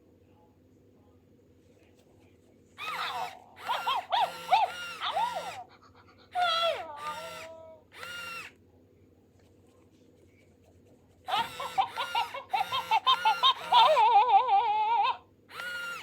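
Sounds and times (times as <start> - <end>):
toy electronic chirps and squeaks: 2.8 - 5.6, 11.3 - 14.1.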